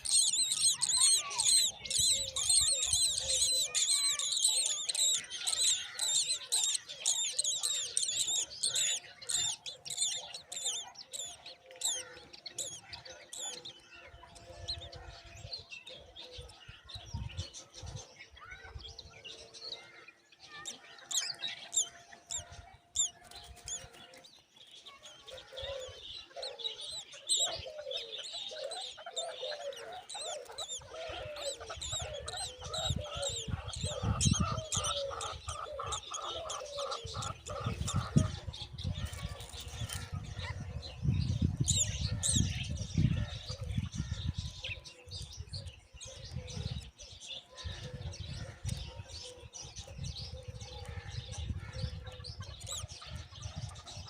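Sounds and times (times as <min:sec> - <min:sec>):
chicks chirping: 0:00.0 - 0:16.5, 0:20.5 - 0:54.0
lower bird calls: 0:00.0 - 0:17.0.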